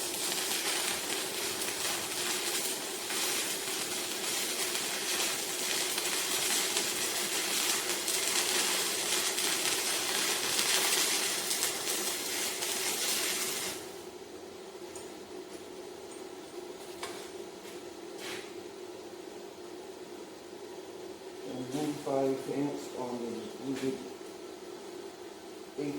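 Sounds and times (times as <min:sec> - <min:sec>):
welding arc crackling: 0:00.0 - 0:14.1.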